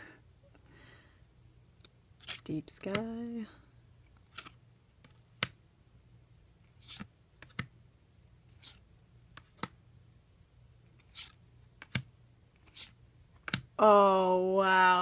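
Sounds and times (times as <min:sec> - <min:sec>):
cards sliding swishes: 0:01.8 - 0:03.0, 0:04.1 - 0:05.6, 0:06.6 - 0:07.7, 0:08.4 - 0:09.8, 0:10.9 - 0:13.7
card snaps and clicks: 0:04.2 - 0:05.6, 0:08.6 - 0:09.8, 0:11.0 - 0:13.7.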